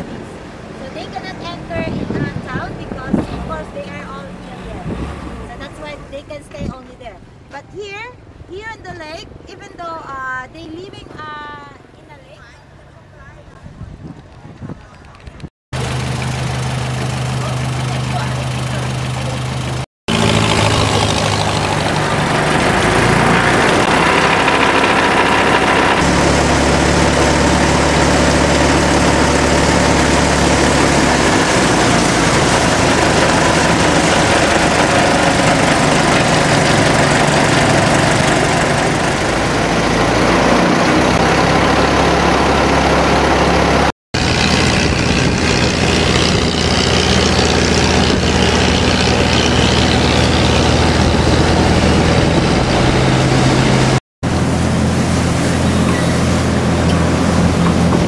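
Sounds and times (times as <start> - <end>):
boat engine running: 0.0 - 7.1, 10.6 - 58.0
hiss of water and wind: 44.2 - 58.0.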